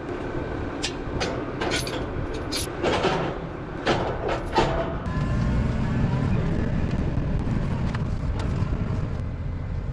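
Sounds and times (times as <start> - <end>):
tractor engine running: 0.0 - 9.9
clanking rattles: 0.8 - 5.0.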